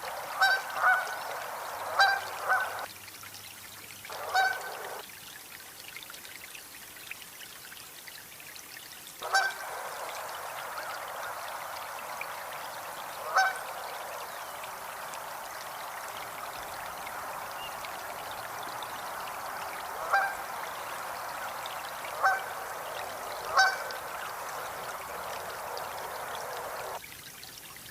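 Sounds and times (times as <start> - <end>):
goose honking: 0.0 - 2.8, 4.1 - 5.0, 9.2 - 14.2, 15.1 - 27.0
steady rushing noise: 9.5 - 27.0.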